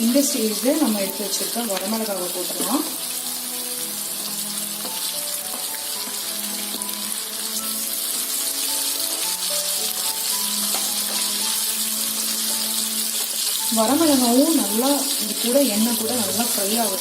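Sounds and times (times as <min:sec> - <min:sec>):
onions sizzling in hot oil: 0:00.0 - 0:17.0.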